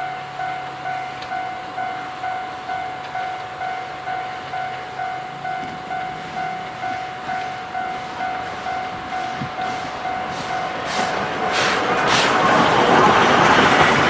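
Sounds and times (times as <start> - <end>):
level crossing alarm ringing: 0.0 - 13.2.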